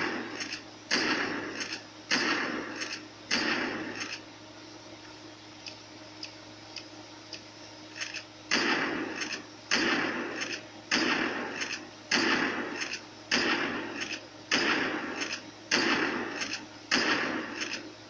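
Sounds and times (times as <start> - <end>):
shotgun blasts: 0.0 - 4.2, 8.5 - 17.9.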